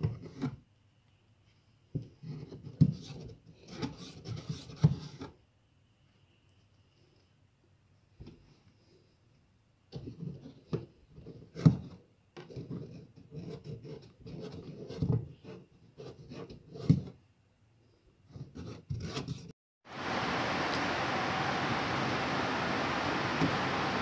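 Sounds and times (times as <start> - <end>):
loud steady rushing noise: 19.9 - 24.0.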